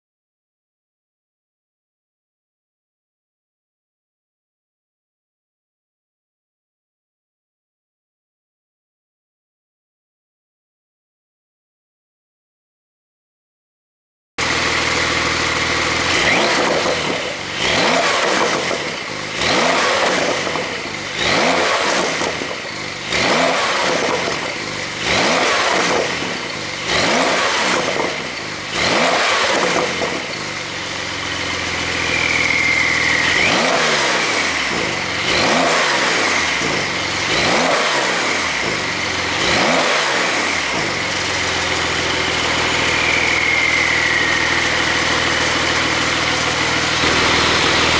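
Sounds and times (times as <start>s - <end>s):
car engine revving: 14.4s - 47.9s.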